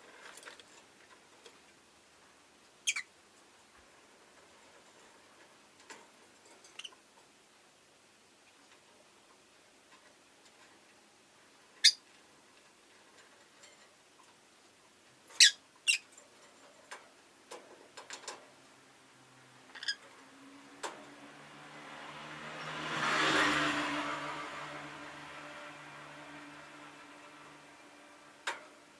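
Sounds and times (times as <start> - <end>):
lovebird chirping: 2.8 - 3.1, 11.8 - 12.0, 15.4 - 16.1
passing vehicle engine hum: 19.1 - 28.9.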